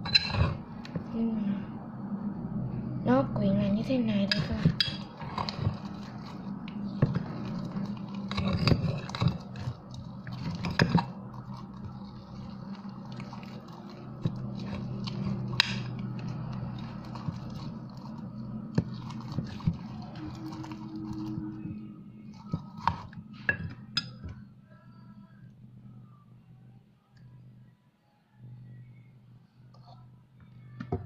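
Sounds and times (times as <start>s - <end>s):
steady low hum: 0.0s - 31.0s
slime being stirred and squished: 4.1s - 24.3s.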